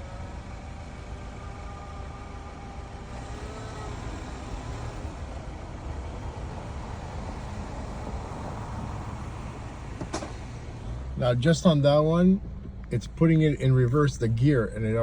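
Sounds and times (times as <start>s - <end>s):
car running and road rumble: 0.0s - 15.0s
car whining: 0.0s - 15.0s.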